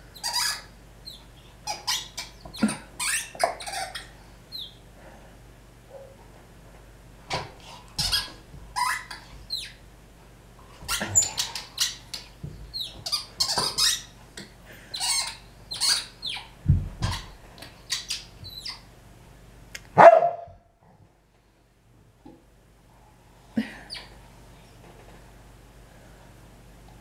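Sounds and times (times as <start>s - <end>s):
squeaky ball squeaking: 0.2s - 4.8s, 8.0s - 9.8s, 10.9s - 12.1s, 12.7s - 14.2s, 14.9s - 18.9s
dog barking: 20.0s - 20.6s.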